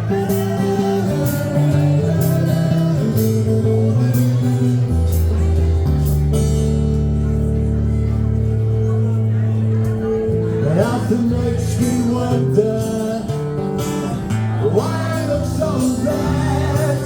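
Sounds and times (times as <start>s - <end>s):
rock band playing: 0.0s - 8.9s.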